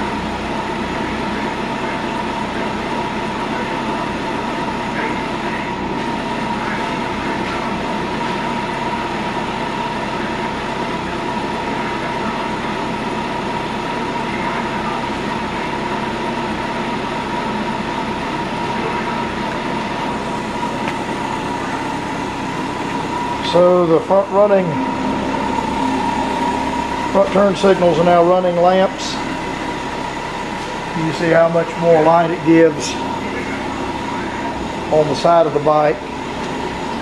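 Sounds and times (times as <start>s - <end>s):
machine running with high whine: 0.0s - 37.0s
low hum: 14.2s - 37.0s.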